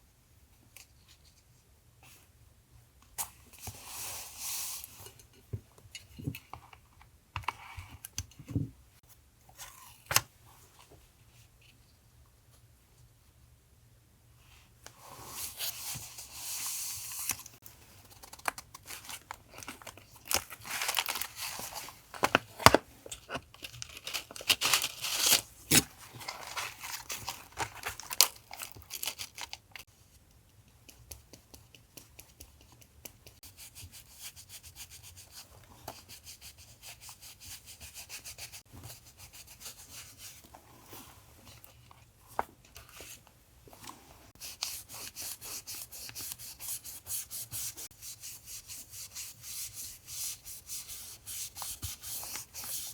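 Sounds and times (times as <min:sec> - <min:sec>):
paper tearing and rustling: 0:18.2 - 0:22.8, 0:23.6 - 0:29.7.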